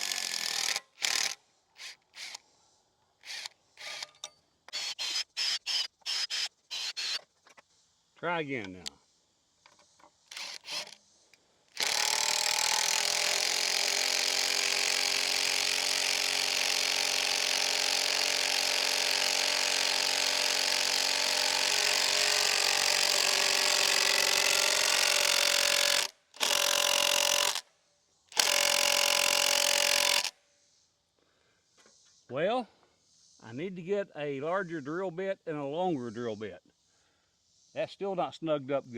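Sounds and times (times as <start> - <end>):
power drill driving screw into wood: 0.0 - 2.4, 3.2 - 7.3, 10.3 - 11.0, 11.8 - 27.6, 28.3 - 30.3.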